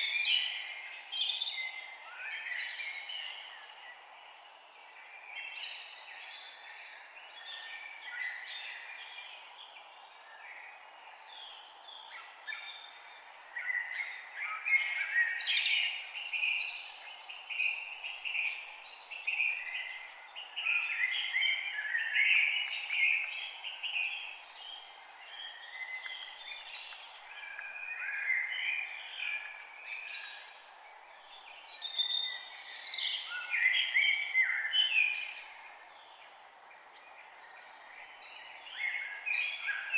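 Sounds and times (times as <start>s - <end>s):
faint background noise: 0.0s - 39.9s
birds chirping and singing: 31.8s - 36.0s.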